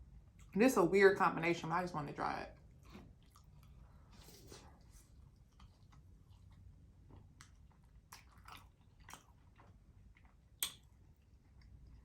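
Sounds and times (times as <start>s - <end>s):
person chewing food: 2.6s - 12.0s
mouth clicks and smacks: 10.6s - 10.9s.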